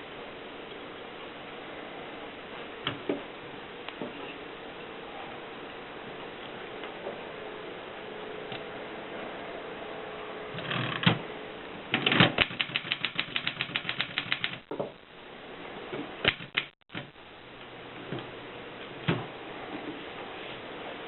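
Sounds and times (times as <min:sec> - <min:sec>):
typewriter clicking: 0:11.9 - 0:14.7, 0:16.3 - 0:17.1.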